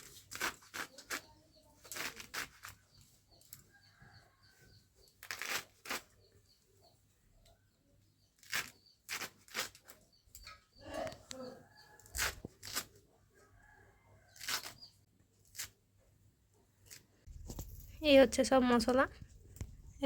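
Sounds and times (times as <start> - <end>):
plant stems being cut: 0.0 - 3.6, 5.1 - 6.1, 8.4 - 10.5, 11.2 - 13.0, 14.3 - 15.8
faint bird chirps: 0.9 - 5.4, 6.1 - 15.1.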